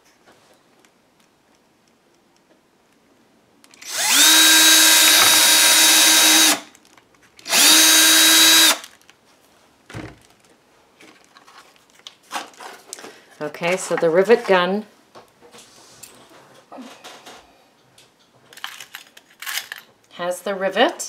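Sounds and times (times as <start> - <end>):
electric drill whining: 3.7 - 6.7, 7.4 - 8.9.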